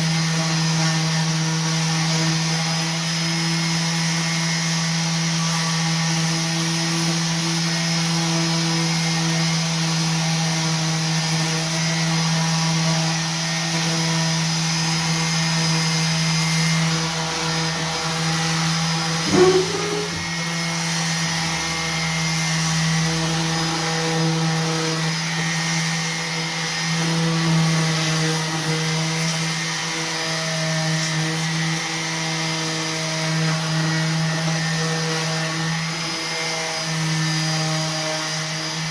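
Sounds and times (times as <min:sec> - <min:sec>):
orbital sander on wood: 0:00.0 - 0:20.1, 0:22.4 - 0:38.9
brief knock: 0:19.2 - 0:20.5.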